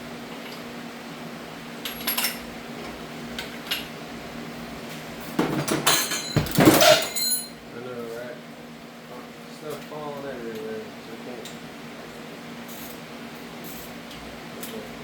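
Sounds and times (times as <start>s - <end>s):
metal parts clinking: 5.9s - 7.5s.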